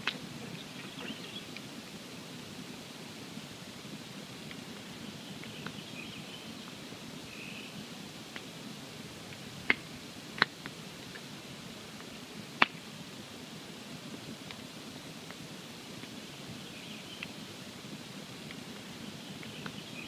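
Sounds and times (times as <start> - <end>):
campfire crackling: 0.0 - 20.0
loud fire pops: 9.3 - 11.3.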